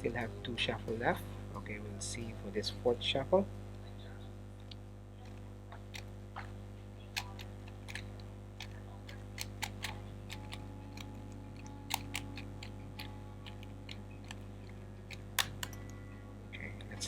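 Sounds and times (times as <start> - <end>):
steady low hum: 0.0 - 17.0
puzzle cube turns clicking: 4.6 - 6.5, 7.1 - 15.8.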